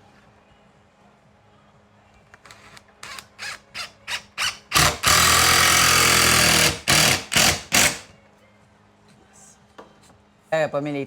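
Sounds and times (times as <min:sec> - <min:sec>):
power drill driving screw: 0:02.5 - 0:08.1.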